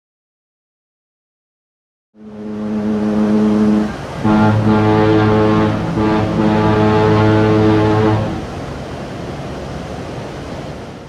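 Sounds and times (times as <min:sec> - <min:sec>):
ship horn blast: 0:02.2 - 0:08.8.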